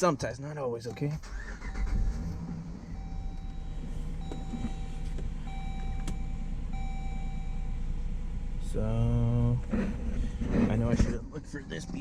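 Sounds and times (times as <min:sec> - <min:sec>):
engine idling with misfire: 0:01.0 - 0:12.0
pitched beeping tone: 0:02.8 - 0:07.8, 0:11.7 - 0:12.0.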